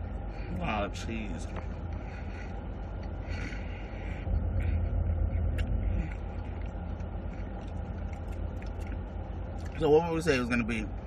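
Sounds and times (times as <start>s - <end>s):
low rumble: 0.0s - 11.0s
person chewing food: 1.4s - 9.8s.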